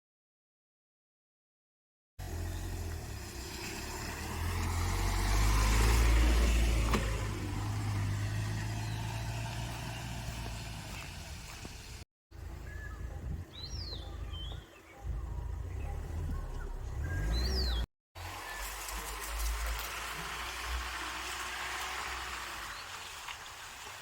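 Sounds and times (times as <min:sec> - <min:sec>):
bird chirping: 0:12.4 - 0:17.9.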